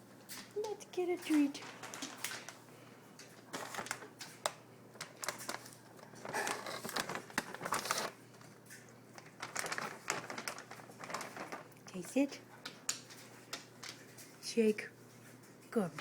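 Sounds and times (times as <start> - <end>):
plastic bag crinkling: 0.6 - 14.3.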